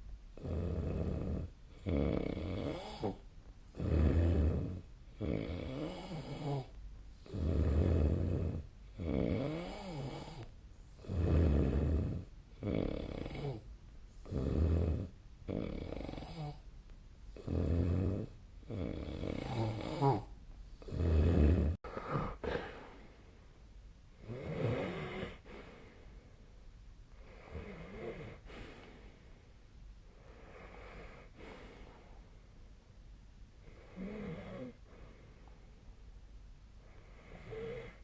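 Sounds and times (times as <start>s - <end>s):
person snoring: 0.4s - 13.6s, 14.2s - 16.6s, 17.4s - 23.0s, 24.2s - 25.7s, 37.1s - 38.0s.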